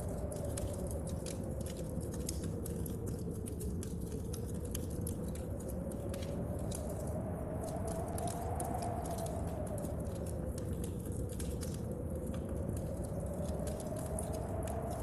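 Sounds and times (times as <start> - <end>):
low wind howl: 0.0 - 15.0
rain: 0.0 - 15.0
wood fire crackling in stove: 0.0 - 15.0
storm wind rushing: 5.7 - 15.0.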